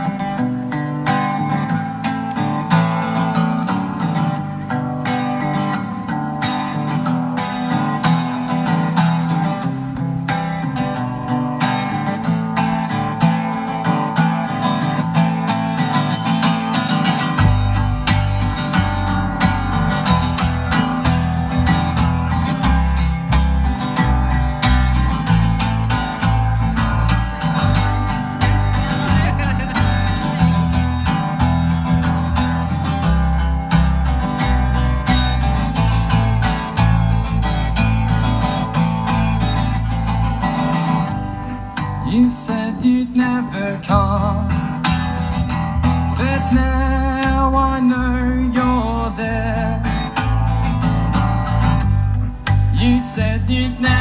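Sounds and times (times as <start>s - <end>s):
strummed acoustic guitar: 0.0s - 54.0s
low bass notes: 12.6s - 54.0s.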